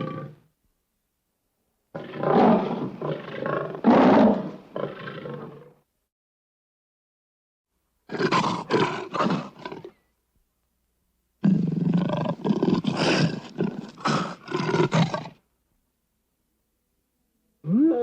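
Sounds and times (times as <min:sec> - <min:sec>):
lion roaring: 0:00.0 - 0:00.4, 0:02.0 - 0:05.8, 0:11.4 - 0:15.4, 0:17.6 - 0:18.0.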